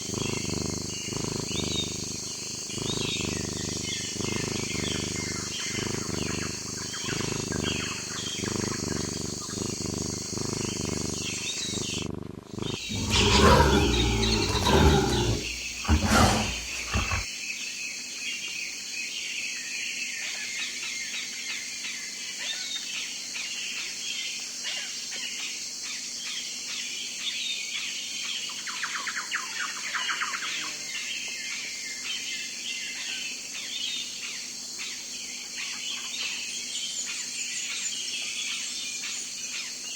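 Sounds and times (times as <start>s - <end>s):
birds chirping: 0.0s - 9.7s, 10.3s - 17.3s
fast chattering calls: 0.0s - 17.2s
low pulsing animal calls: 0.0s - 17.3s
loud deep animal calls: 12.7s - 17.3s.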